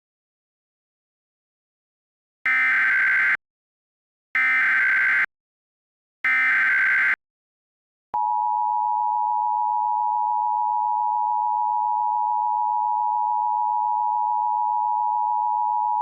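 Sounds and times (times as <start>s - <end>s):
data burst buzzing screech: 2.5s - 3.4s, 4.4s - 5.3s, 6.3s - 7.2s.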